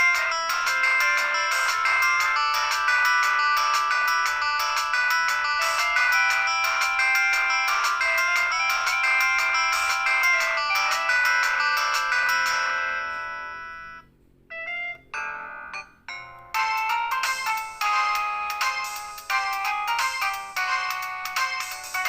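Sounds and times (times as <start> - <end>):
polyphonic phone ringtone: 0.0 - 22.0.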